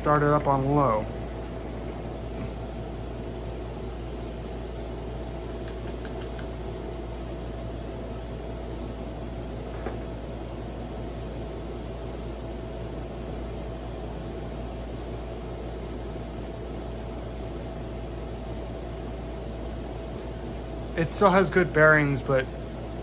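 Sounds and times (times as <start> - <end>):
ceiling fan humming: 0.0 - 23.0.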